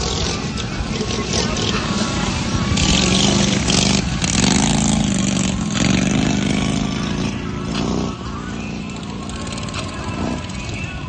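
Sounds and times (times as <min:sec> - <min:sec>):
lawn mower engines revving: 0:00.0 - 0:11.0.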